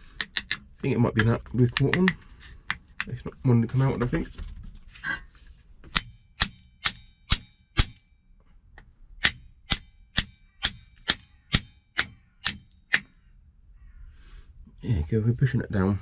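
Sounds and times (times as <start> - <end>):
hammer striking metal: 5.9 - 8.1, 9.2 - 13.1.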